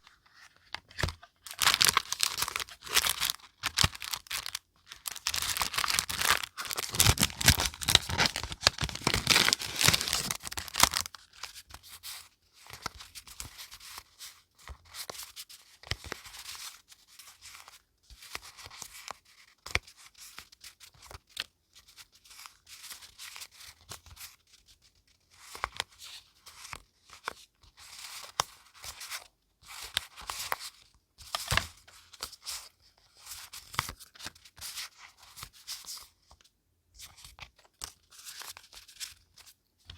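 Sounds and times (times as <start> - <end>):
paper rustling: 0.0 - 11.6
paper tearing and crinkling: 1.5 - 11.1.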